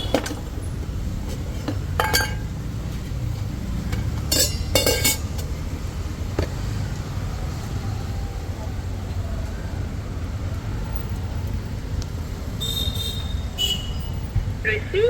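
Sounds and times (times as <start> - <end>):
road traffic rumble: 0.0 - 15.0
metal utensils clinking: 1.5 - 2.7, 3.8 - 5.7.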